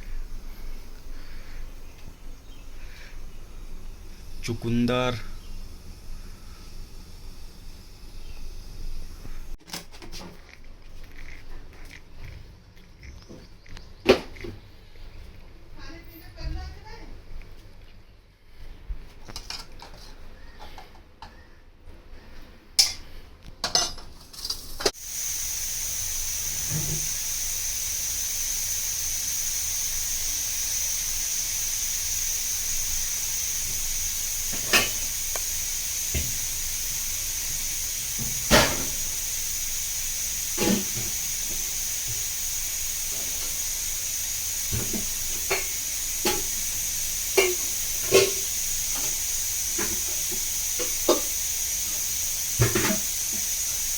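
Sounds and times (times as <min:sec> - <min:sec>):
food sizzling on stove: 0:00.0 - 0:09.6, 0:24.2 - 0:53.9.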